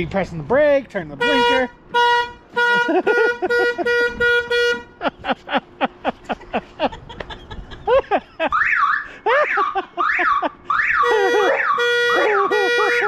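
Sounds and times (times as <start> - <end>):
small electric car horns tooting: 1.2 - 5.0, 10.8 - 13.0.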